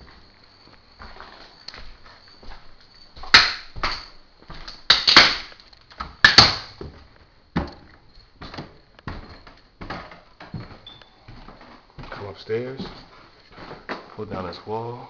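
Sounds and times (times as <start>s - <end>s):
wood being struck and broken: 3.2s - 4.1s, 4.7s - 7.0s.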